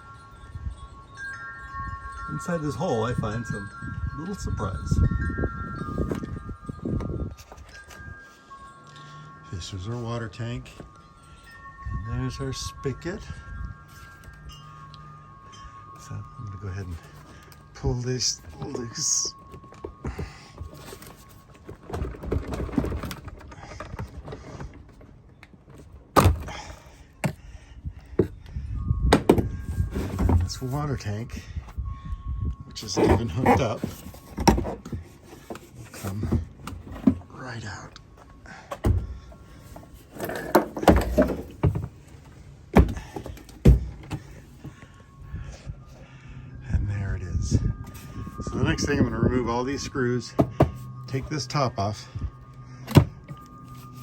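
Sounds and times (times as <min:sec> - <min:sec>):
water tank scraping: 0:32.8 - 0:37.4.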